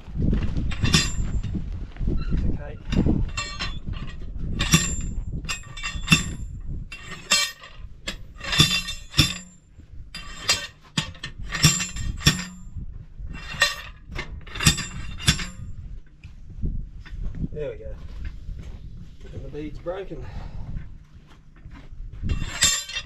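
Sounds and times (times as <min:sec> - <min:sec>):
metallic clanks of bead breaker: 0:00.7 - 0:01.5, 0:02.9 - 0:09.6, 0:10.2 - 0:12.7, 0:13.4 - 0:15.7, 0:22.3 - 0:23.0.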